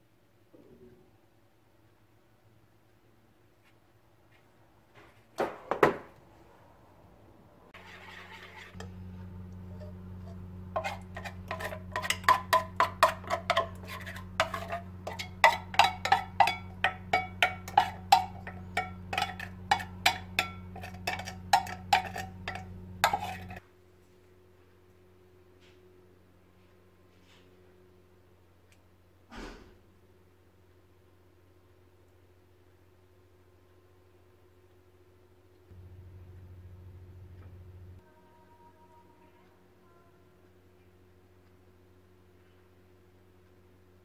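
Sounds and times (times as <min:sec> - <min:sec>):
utensil clinking against dish: 0:10.8 - 0:23.6.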